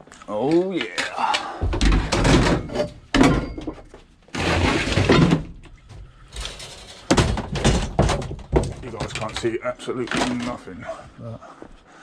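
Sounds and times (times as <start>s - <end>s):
scrap metal knocks and clatters: 1.6s - 10.6s
metal scraping rattles: 1.8s - 10.6s.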